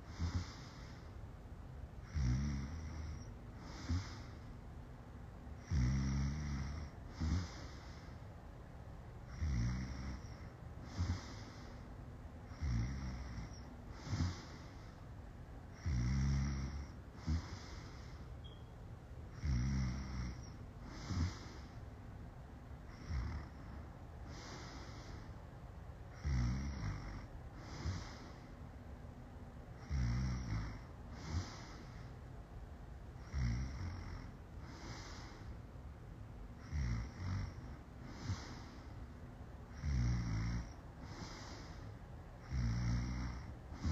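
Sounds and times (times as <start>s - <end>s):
woman snoring heavily: 0.1s - 1.0s, 2.0s - 4.4s, 5.6s - 8.1s, 9.3s - 11.8s, 12.5s - 15.0s, 15.7s - 18.2s, 19.3s - 21.8s, 22.9s - 25.3s, 26.1s - 28.5s, 29.8s - 32.1s, 33.2s - 35.5s, 36.6s - 38.9s, 39.7s - 43.9s.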